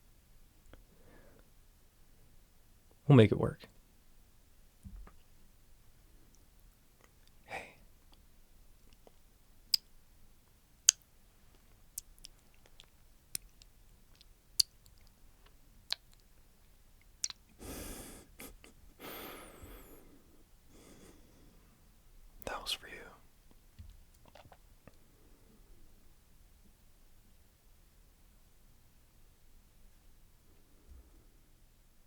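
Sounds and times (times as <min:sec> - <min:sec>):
person breathing: 0:00.9 - 0:01.5, 0:17.6 - 0:21.8.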